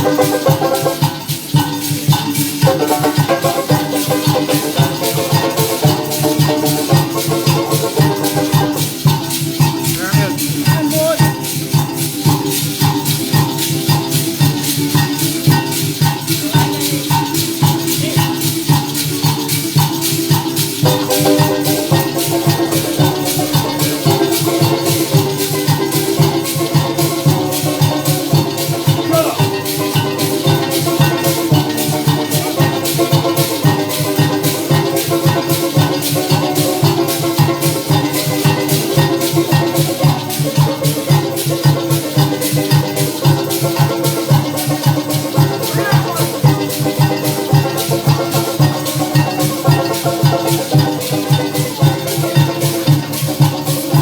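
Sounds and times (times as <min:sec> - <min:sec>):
band playing: 0:00.0 - 0:54.0
maracas shaken: 0:00.0 - 0:54.0.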